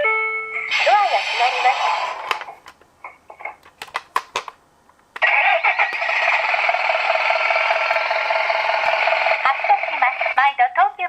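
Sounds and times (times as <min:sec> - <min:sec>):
tinny toy engine sound effect: 0:00.7 - 0:02.4, 0:05.2 - 0:10.4
plastic clicks: 0:03.6 - 0:05.3.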